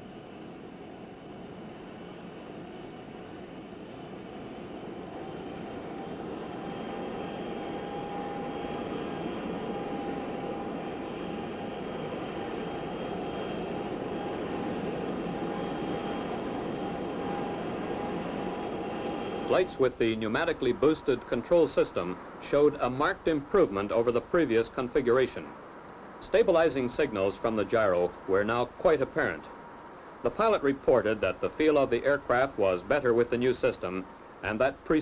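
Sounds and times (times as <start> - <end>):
high whine: 0.0 - 35.0
jet engine rushing: 3.8 - 24.8.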